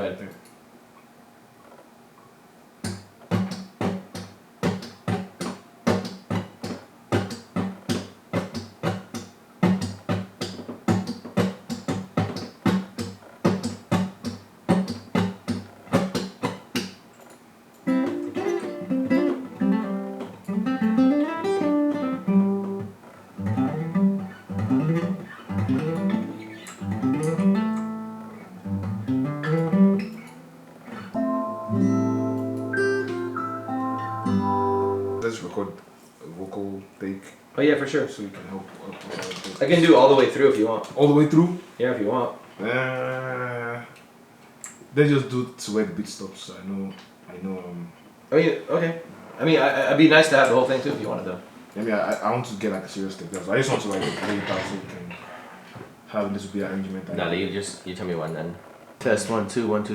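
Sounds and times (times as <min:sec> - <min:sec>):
muted guitar strums: 0:02.8 - 0:17.0, 0:17.9 - 0:35.3
picked guitar notes with slides: 0:17.9 - 0:35.2.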